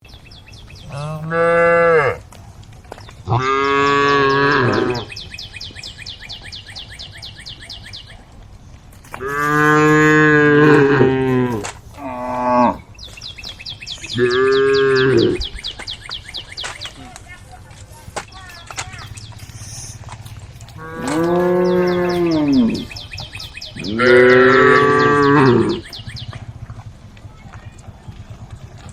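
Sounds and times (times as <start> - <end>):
cows mooing: 0.8 - 2.3, 3.2 - 5.2, 9.2 - 12.9, 14.1 - 15.5, 19.5 - 23.2, 23.8 - 26.9.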